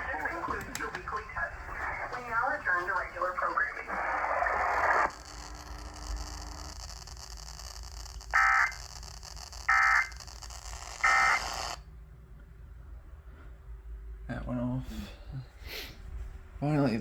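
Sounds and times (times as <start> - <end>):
radio hiss: 0.0 - 11.8
noisy broadcast sound: 0.0 - 11.9
digital data tone bursts: 4.4 - 11.8.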